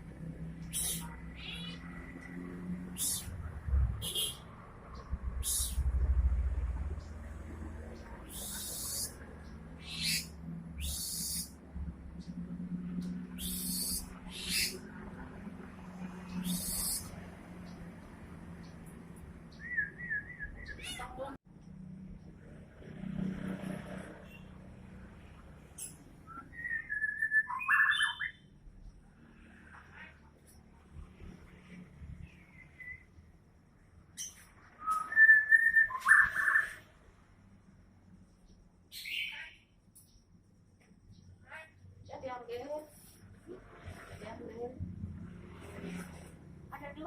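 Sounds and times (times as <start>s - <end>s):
bird harsh hissing calls: 0.6s - 1.9s, 2.9s - 3.3s, 5.4s - 5.9s, 8.3s - 9.2s, 9.8s - 11.5s, 13.4s - 14.8s, 16.3s - 17.2s
songbird whistling song: 0.6s - 2.0s, 2.9s - 3.4s, 5.0s - 5.9s, 8.0s - 11.6s, 13.0s - 14.8s, 16.3s - 17.8s, 19.5s - 21.1s, 25.8s - 28.5s, 32.5s - 33.2s, 34.1s - 36.9s, 38.9s - 40.2s.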